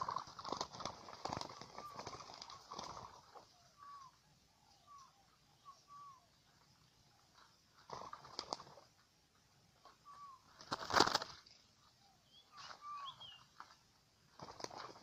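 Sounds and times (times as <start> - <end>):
dove wings flapping: 0.0 - 3.5, 7.7 - 8.9, 9.8 - 11.6, 13.5 - 15.0
brief bird calls: 1.0 - 7.3, 9.8 - 13.7.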